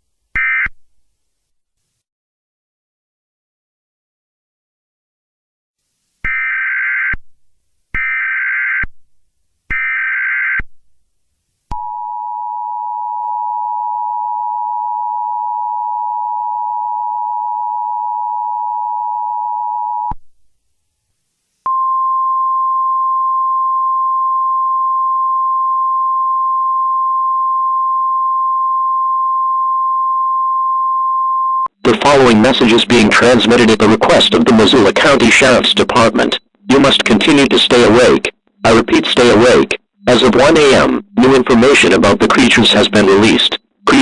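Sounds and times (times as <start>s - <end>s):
steady warning alarm tone: 12.0s - 20.1s.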